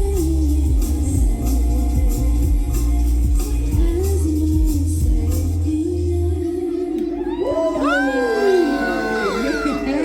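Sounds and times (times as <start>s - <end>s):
drums keeping steady beat: 0.0s - 5.6s
heavy bass: 0.0s - 6.5s.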